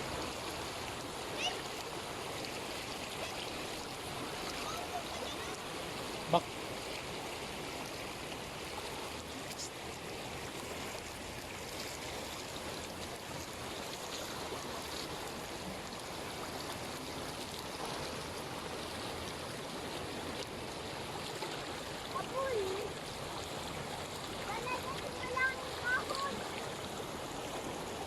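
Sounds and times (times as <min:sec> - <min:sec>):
floodwater rushing: 0:00.0 - 0:28.0.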